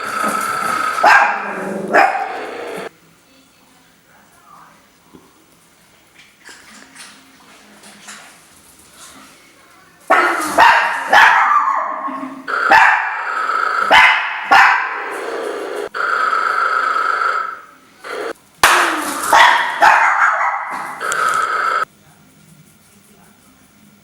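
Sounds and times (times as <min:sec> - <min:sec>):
small dog yapping: 0:10.1 - 0:12.0.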